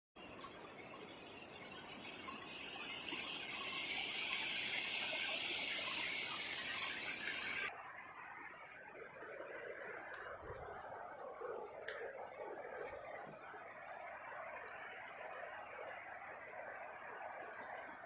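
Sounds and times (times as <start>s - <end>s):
high-pitched insect drone: 0.2s - 7.7s.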